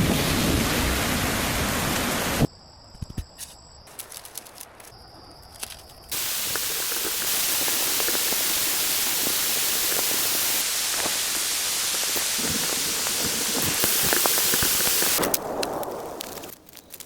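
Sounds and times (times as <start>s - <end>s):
heavy rain hiss: 0.0s - 2.5s, 6.1s - 16.7s
scattered drips and clicks: 6.1s - 17.0s.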